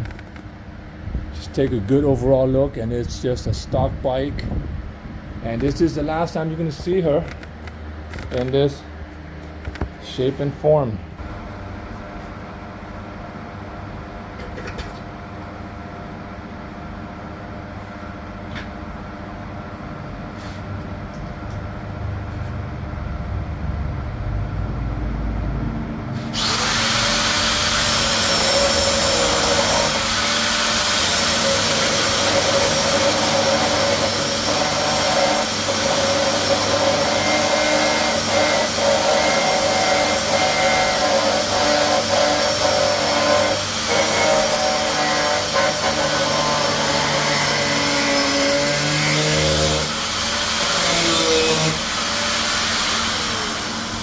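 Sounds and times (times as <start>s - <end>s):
power tool motor whining: 26.2s - 54.0s.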